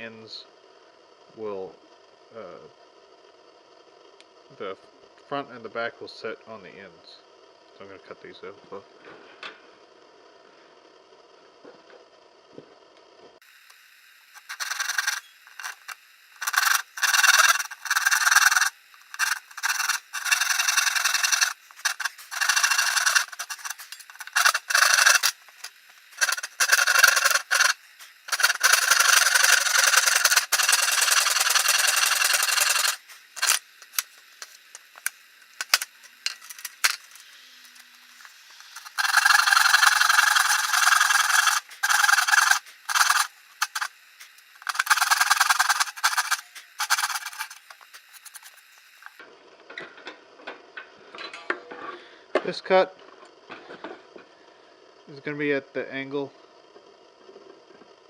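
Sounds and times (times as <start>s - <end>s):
sawing wooden board: 14.4s - 33.6s, 38.7s - 43.9s, 44.6s - 48.6s.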